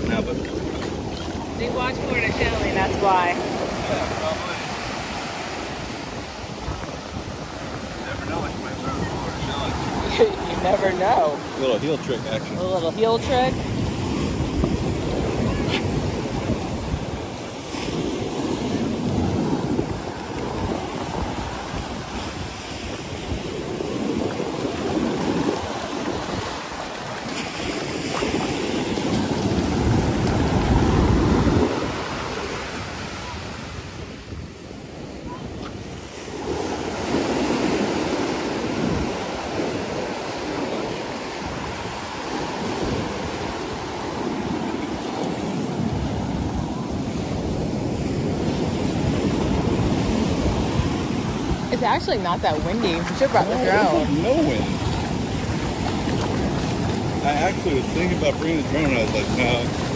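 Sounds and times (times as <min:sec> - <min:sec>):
ocean surf breaking: 0:00.0 - 0:59.9.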